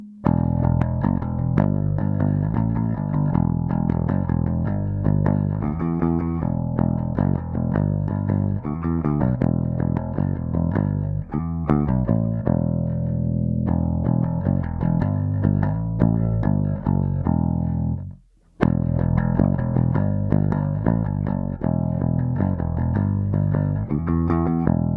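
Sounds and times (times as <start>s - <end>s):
electric bass plucked notes: 0.0s - 24.9s.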